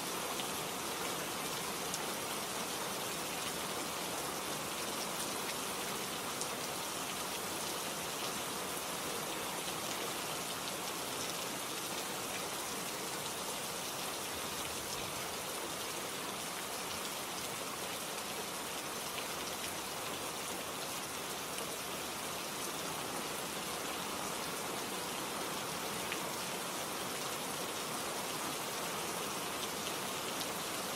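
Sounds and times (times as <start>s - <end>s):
steady rain falling: 0.0s - 30.9s.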